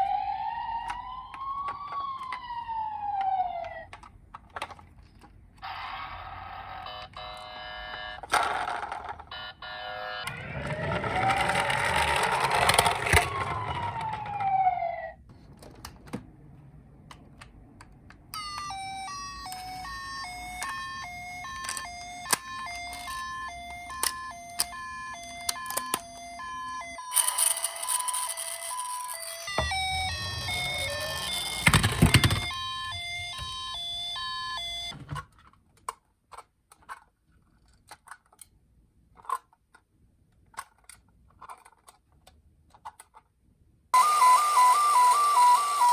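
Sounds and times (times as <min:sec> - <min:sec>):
toy electronic sirens: 0:00.0 - 0:03.9, 0:05.6 - 0:08.5, 0:09.2 - 0:15.2, 0:18.4 - 0:35.0, 0:44.0 - 0:45.9
two-tone ambulance siren: 0:00.0 - 0:03.9, 0:05.6 - 0:08.2, 0:09.3 - 0:15.2, 0:18.4 - 0:35.0, 0:44.0 - 0:45.9.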